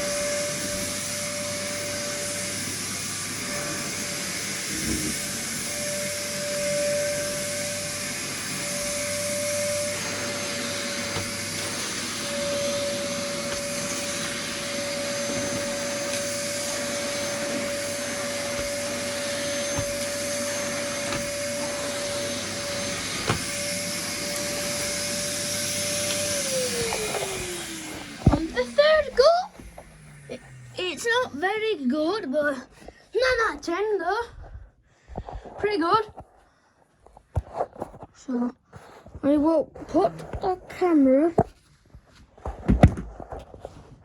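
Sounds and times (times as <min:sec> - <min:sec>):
vacuum cleaner motor whine: 0:00.0 - 0:31.7.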